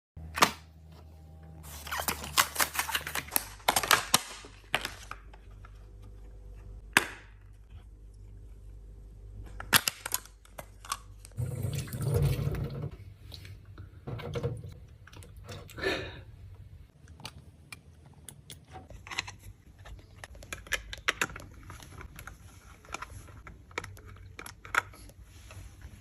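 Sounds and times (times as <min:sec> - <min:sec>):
rustling handling noise: 0:18.8 - 0:26.0.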